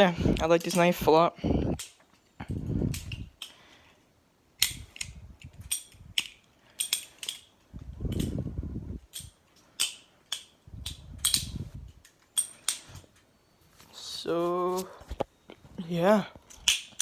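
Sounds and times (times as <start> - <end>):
butterfly knife metallic clicks: 4.6 - 7.5, 9.1 - 11.6
handling rustling: 10.9 - 15.7.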